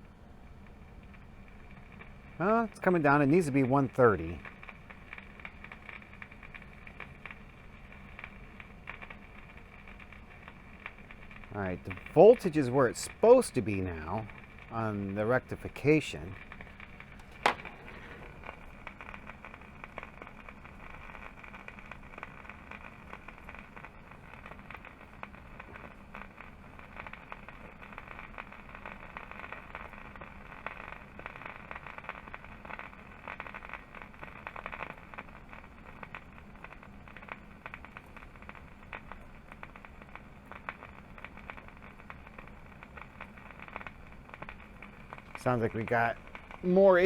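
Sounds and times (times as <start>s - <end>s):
radio static and hiss: 2.3s - 6.7s, 11.4s - 26.4s, 42.4s - 47.0s.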